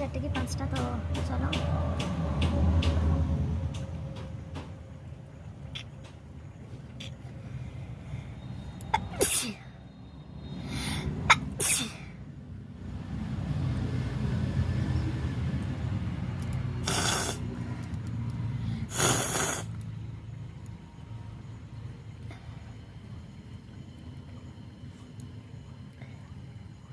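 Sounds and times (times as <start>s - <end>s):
person sneezing: 9.0s - 9.6s, 11.3s - 12.1s
heavy nasal breathing: 10.5s - 11.3s, 16.8s - 17.7s, 18.5s - 19.8s.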